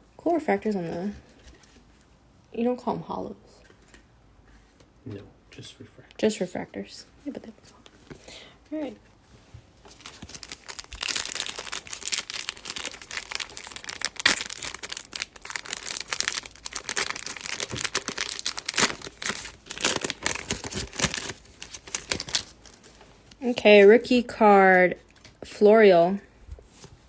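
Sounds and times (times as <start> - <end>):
foil wrapper tearing and crinkling: 9.9 - 23.0.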